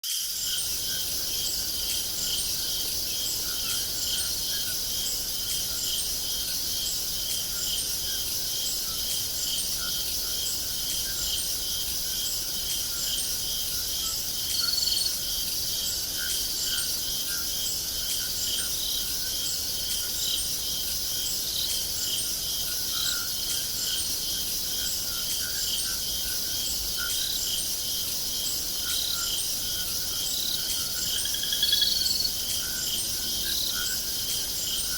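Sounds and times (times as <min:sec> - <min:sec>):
crickets chirping: 0:00.0 - 0:34.9.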